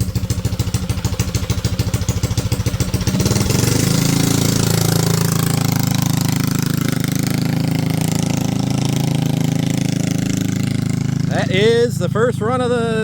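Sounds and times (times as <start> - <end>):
small petrol engine revving: 0.0 - 13.0.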